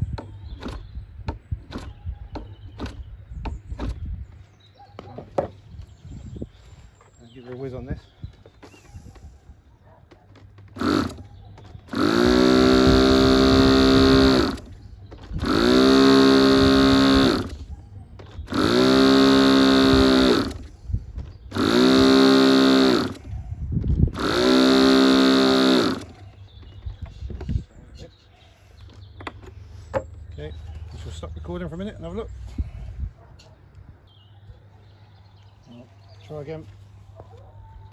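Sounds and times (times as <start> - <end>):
electric starter spinning engine: 10.7 - 11.2, 11.8 - 17.6, 18.4 - 20.7, 21.5 - 23.3, 24.1 - 26.2.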